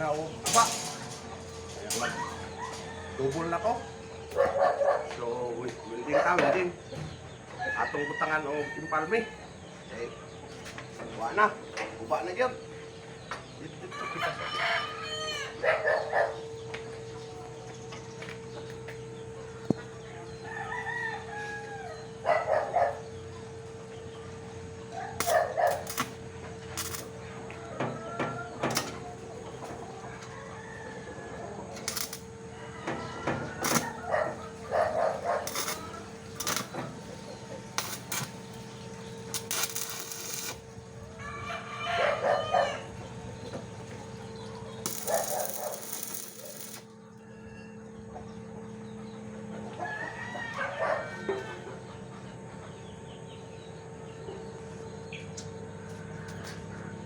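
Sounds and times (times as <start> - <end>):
steady hum: 0.0 - 4.6, 14.9 - 49.8
roosters crowing: 0.0 - 57.0
chickens clucking: 26.3 - 39.9, 40.6 - 44.8, 47.0 - 57.0
sharp cracks: 35.5 - 36.8, 37.8 - 38.6, 39.2 - 40.7, 44.9 - 46.8
hissing: 39.2 - 40.7, 44.9 - 46.8.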